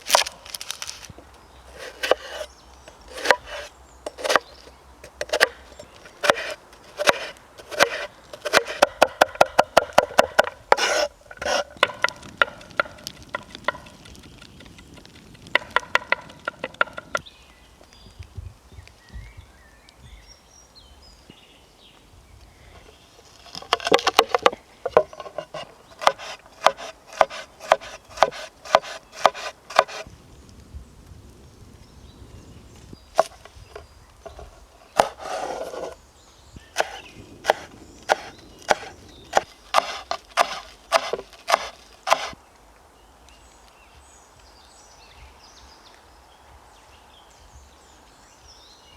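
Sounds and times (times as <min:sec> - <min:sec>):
knife chopping on wooden board: 0:01.8 - 0:02.5, 0:03.1 - 0:04.5, 0:05.2 - 0:05.6, 0:06.2 - 0:13.9, 0:23.5 - 0:30.0, 0:35.0 - 0:36.0, 0:36.8 - 0:42.4.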